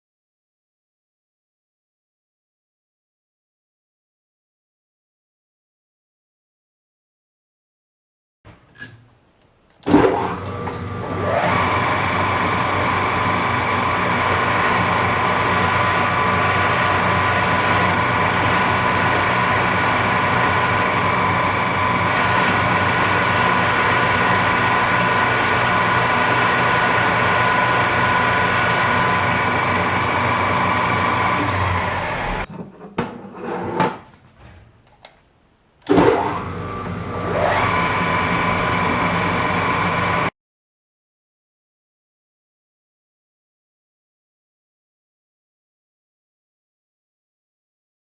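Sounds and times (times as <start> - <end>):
metal lathe whining: 9.9 - 32.5, 35.9 - 40.3.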